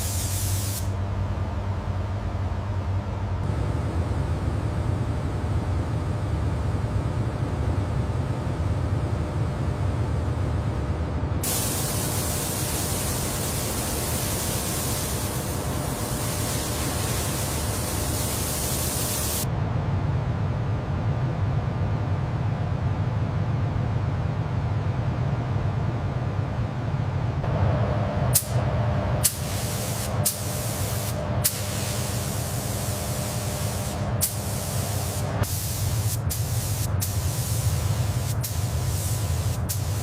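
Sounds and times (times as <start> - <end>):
spraying hiss: 0.0 - 1.0, 11.4 - 19.5, 29.2 - 40.0
low machine hum: 0.0 - 40.0.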